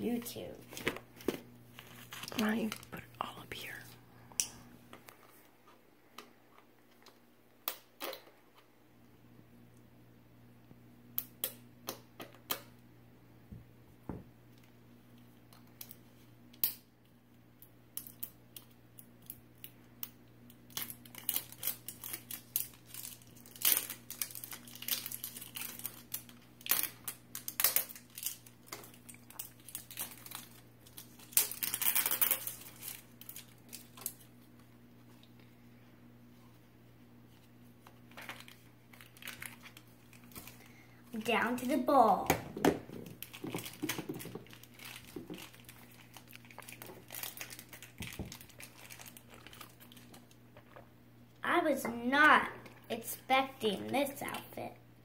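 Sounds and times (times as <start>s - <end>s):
plastic wrapping crackling: 1.7s - 3.8s, 20.7s - 34.3s, 38.1s - 41.9s, 42.8s - 50.4s
wrapping tearing: 20.7s - 34.3s, 38.1s - 41.7s, 43.0s - 50.4s.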